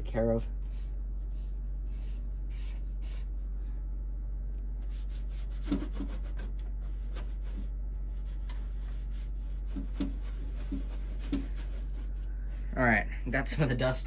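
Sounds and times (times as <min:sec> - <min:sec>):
steady low hum: 0:00.0 - 0:14.0
duster wiping computer part: 0:00.2 - 0:03.4, 0:04.8 - 0:12.2.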